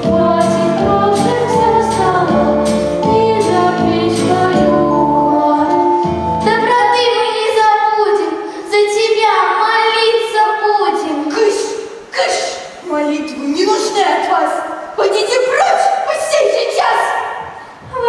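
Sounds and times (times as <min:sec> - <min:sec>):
musical accompaniment: 0:00.0 - 0:07.4
girls singing: 0:00.0 - 0:10.4.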